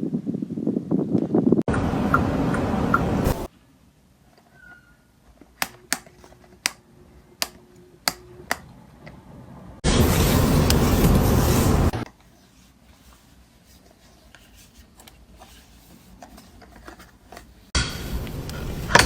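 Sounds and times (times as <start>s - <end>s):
electric fan running: 7.0s - 12.0s.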